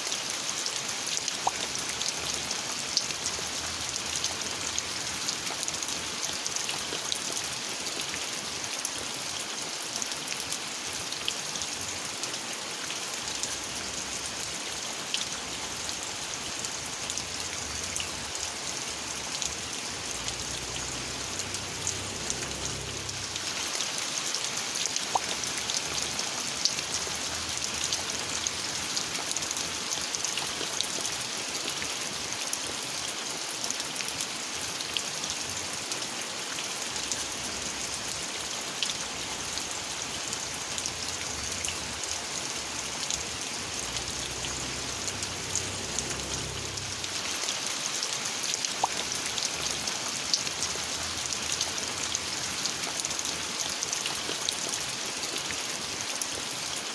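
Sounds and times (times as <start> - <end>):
steady rain falling: 0.0 - 56.9.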